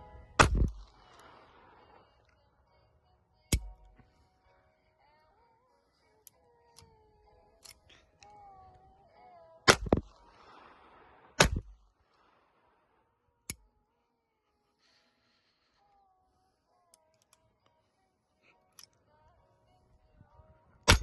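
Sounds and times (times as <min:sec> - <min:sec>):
pistol shots: 0:00.4 - 0:01.8, 0:09.7 - 0:11.8.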